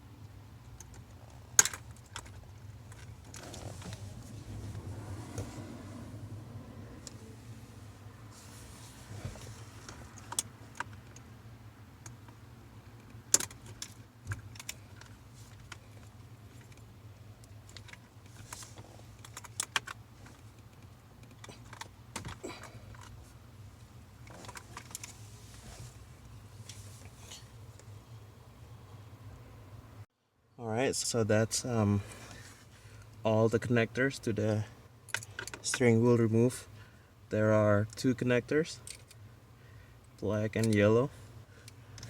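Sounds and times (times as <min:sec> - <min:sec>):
plastic connectors clicking and rattling: 0:00.6 - 0:03.6, 0:13.0 - 0:16.8, 0:19.2 - 0:23.2.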